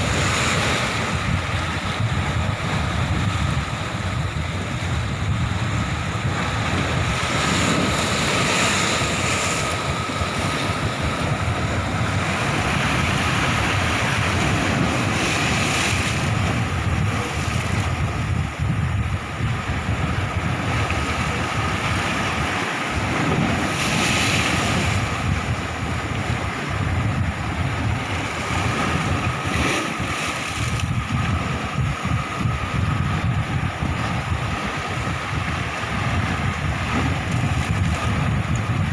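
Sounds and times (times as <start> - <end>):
sea waves washing ashore: 0.0 - 38.9
wind buffeting microphone: 0.0 - 38.9.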